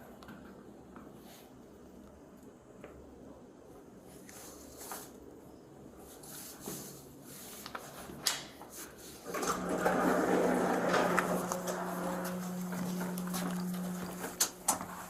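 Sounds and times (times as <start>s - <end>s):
elevator moving with low hum: 9.0s - 15.0s.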